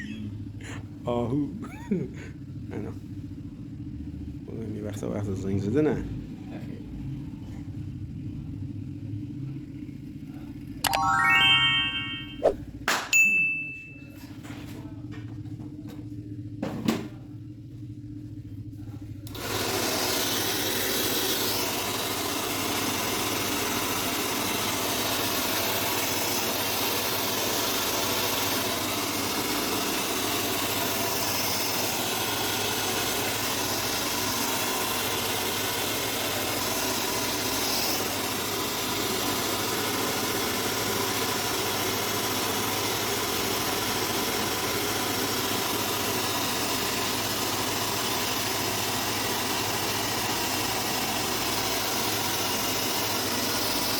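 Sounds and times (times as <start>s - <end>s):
small electric motor running: 19.3s - 53.9s.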